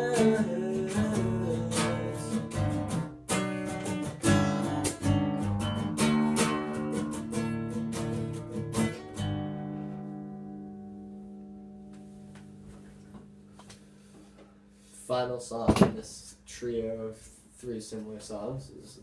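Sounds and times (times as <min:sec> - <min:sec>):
strummed acoustic guitar: 0:00.0 - 0:14.1.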